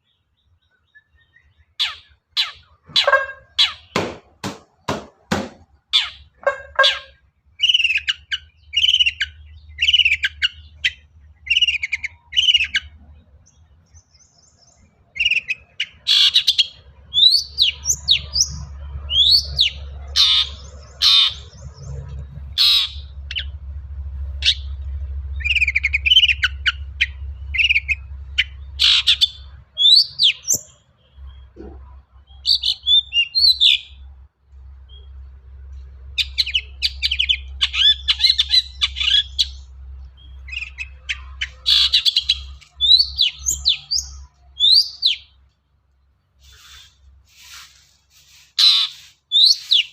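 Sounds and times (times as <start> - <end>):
low rumble: 18.4 - 28.8.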